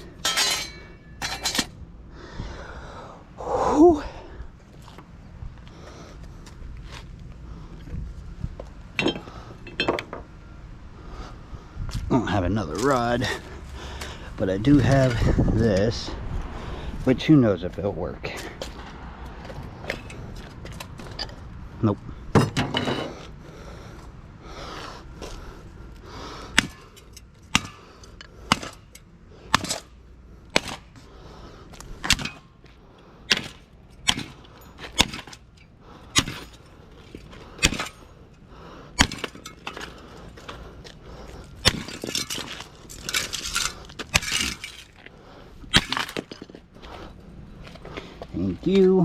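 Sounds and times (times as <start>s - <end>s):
metal scraping and rattling: 0.0s - 1.8s, 22.4s - 23.2s, 33.3s - 46.8s
hammer striking metal: 0.2s - 1.7s.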